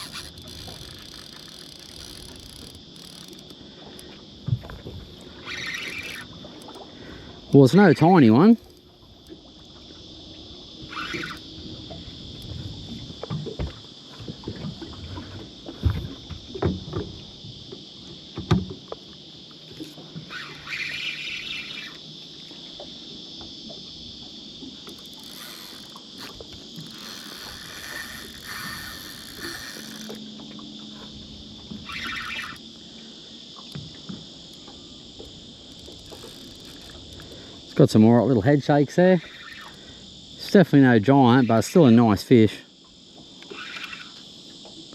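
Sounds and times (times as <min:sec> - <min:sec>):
knocks and thumps on a boat: 0:00.0 - 0:09.7, 0:11.2 - 0:20.4, 0:33.6 - 0:38.3
high insect drone: 0:00.0 - 0:44.9.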